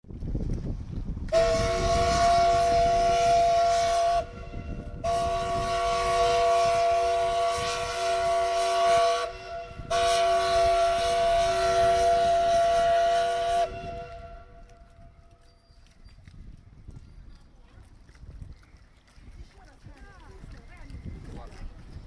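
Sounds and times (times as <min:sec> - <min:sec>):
steam whistle blasts: 0:01.3 - 0:14.7.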